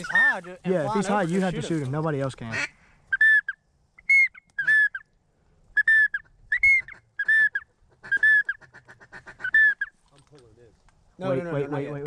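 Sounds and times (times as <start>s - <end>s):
whistled duck calls: 0.0s - 0.5s, 2.5s - 5.1s, 5.7s - 10.0s.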